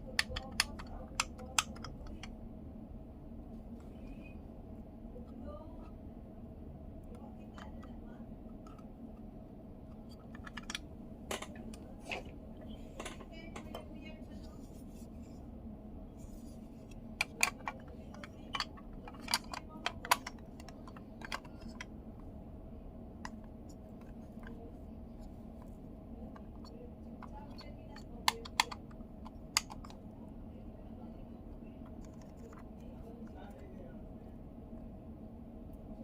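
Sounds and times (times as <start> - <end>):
low hum: 0.0 - 36.0
plastic clicks and taps: 0.2 - 2.3, 26.4 - 30.0.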